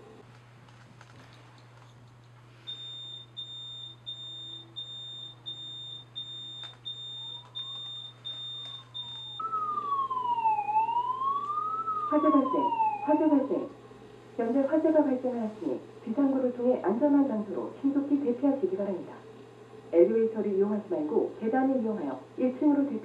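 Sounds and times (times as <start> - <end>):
high electronic alarm beeps: 2.7 - 13.0
wailing electronic siren: 6.2 - 13.7.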